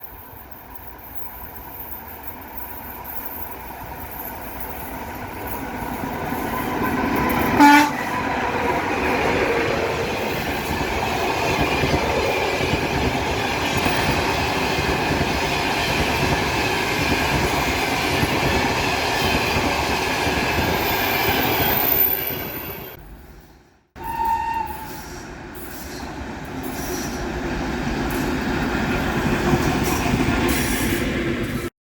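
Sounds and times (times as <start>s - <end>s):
passing train rolling: 0.0s - 31.7s
train horn blast: 6.5s - 8.8s, 24.0s - 25.2s.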